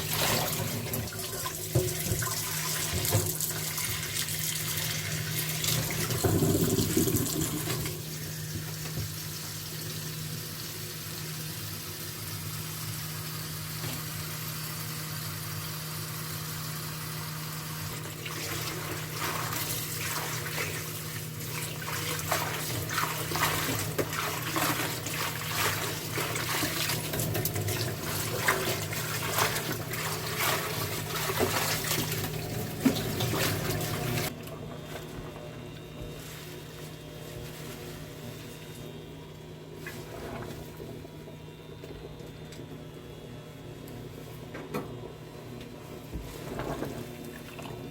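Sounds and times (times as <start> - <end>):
water splashing and sloshing: 0.0 - 9.2, 17.9 - 35.4, 39.7 - 41.2, 45.9 - 47.9
running water: 0.0 - 10.0.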